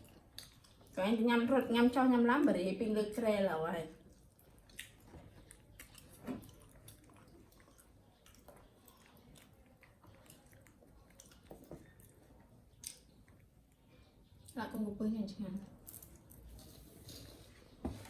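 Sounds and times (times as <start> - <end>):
monkey chewing: 4.0 - 13.8.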